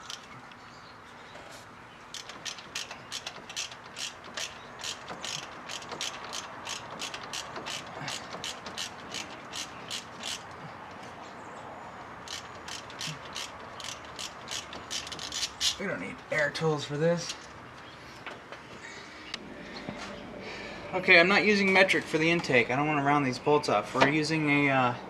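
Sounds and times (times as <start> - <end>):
socket ratchet clicking: 2.1 - 10.6, 12.2 - 15.8.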